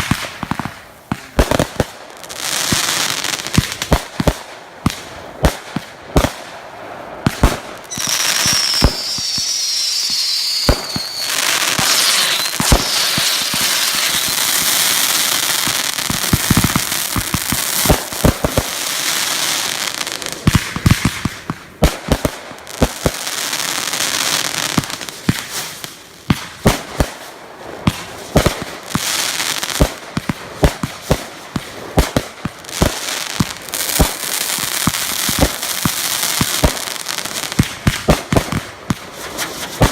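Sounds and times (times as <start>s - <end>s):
firework bangs and crackles: 0.0s - 39.9s
high firework whistle: 7.9s - 15.4s.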